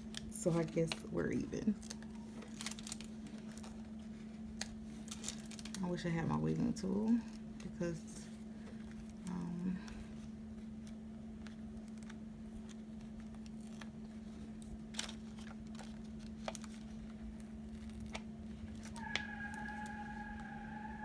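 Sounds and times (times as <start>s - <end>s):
steady low hum: 0.0s - 21.0s
steady higher tone: 18.8s - 21.0s.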